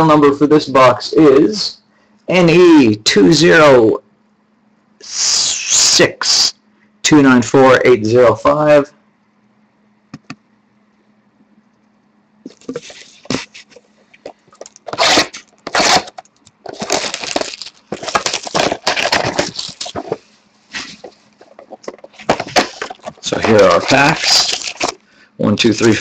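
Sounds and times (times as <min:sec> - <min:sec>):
wrapping and cardboard crackling: 0:12.5 - 0:25.0.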